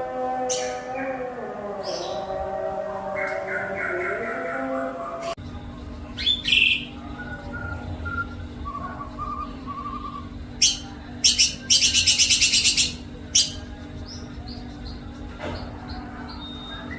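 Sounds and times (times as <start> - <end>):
bird singing warbled notes: 0.0 - 5.4, 6.2 - 15.0
steady low hum: 0.0 - 16.9
fast rattling bird notes: 6.1 - 16.9
loud sharp bird calls: 6.2 - 16.9.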